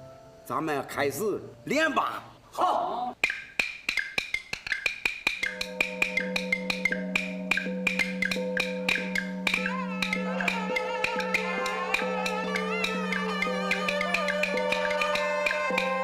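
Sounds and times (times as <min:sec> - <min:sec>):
wooden clapper clicks: 0:03.2 - 0:16.0
wavering higher melody: 0:04.0 - 0:16.0
held low note: 0:05.6 - 0:16.0.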